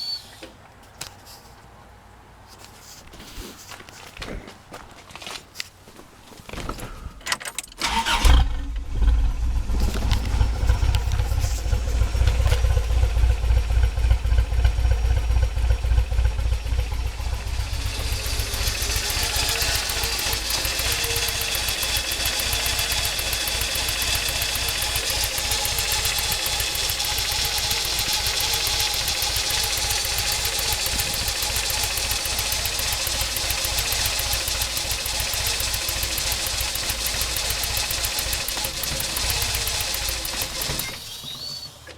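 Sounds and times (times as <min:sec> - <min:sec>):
starter clicks: 0:07.2 - 0:09.0, 0:16.3 - 0:41.9
engine idling: 0:07.8 - 0:41.9.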